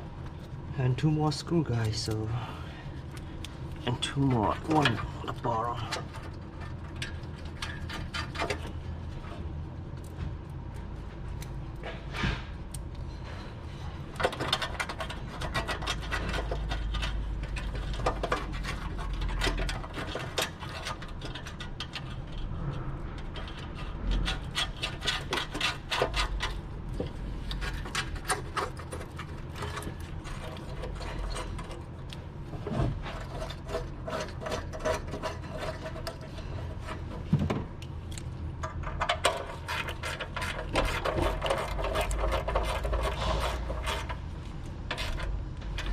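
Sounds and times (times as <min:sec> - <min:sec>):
hand tool clicking and scraping: 0:03.1 - 0:08.8, 0:14.1 - 0:22.5, 0:23.2 - 0:32.3, 0:33.0 - 0:45.9.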